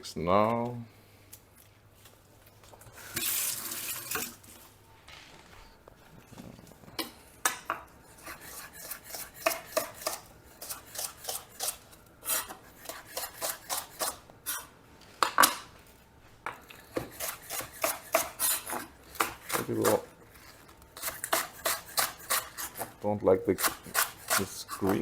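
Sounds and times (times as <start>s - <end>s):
knife chopping on cutting board: 8.2s - 11.8s, 16.9s - 20.0s.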